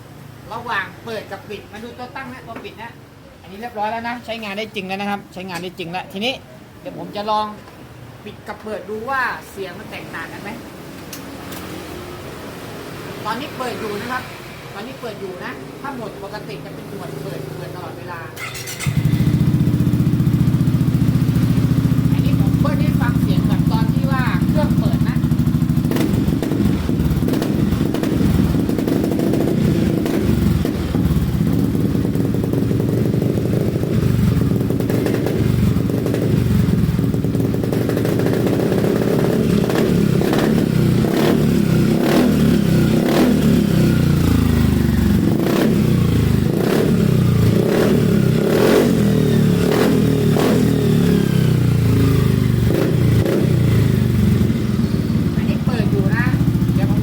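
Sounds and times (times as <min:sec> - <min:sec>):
scooter engine revving: 0:16.0 - 0:57.0.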